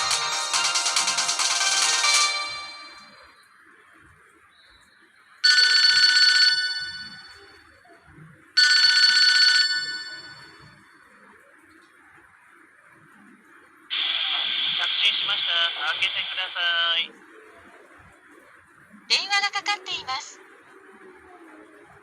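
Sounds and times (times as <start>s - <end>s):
electronic phone ringtone: 0.0s - 3.4s, 5.4s - 7.6s, 8.6s - 10.8s.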